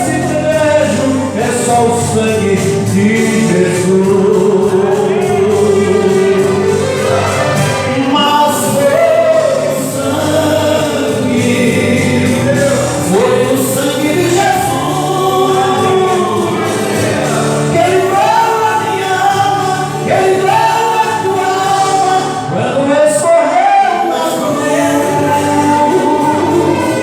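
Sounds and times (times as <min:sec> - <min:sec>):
instrumental accompaniment: 0:00.0 - 0:27.0
voices singing together: 0:02.6 - 0:27.0.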